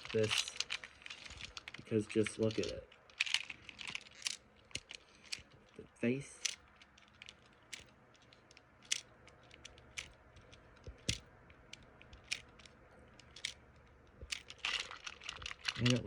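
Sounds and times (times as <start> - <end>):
plastic toy clicks and taps: 6.4 - 13.6, 14.2 - 16.0.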